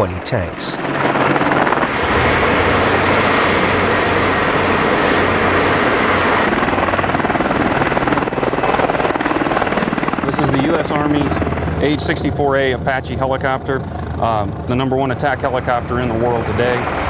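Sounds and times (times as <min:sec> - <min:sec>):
helicopter rotor blades beating: 0:00.0 - 0:17.0
turbine engines whining: 0:00.0 - 0:17.0.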